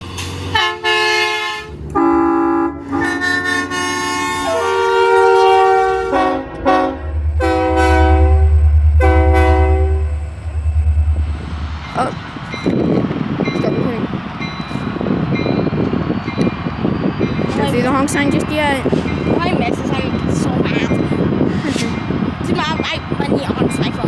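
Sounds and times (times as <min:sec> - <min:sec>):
locomotive engine rumble: 0:00.0 - 0:24.0
locomotive air horn blasts: 0:00.5 - 0:11.2.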